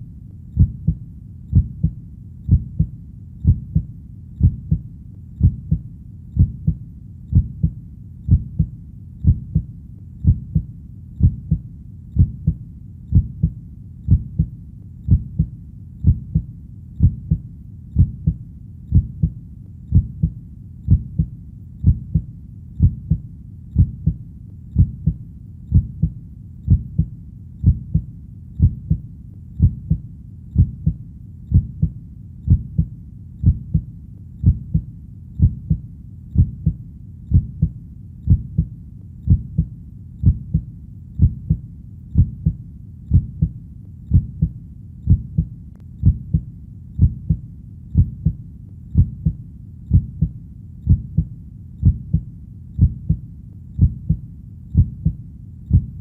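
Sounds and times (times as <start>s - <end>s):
faint low rumble: 0.0s - 56.0s
heartbeat thumps: 0.6s - 29.0s, 29.6s - 56.0s.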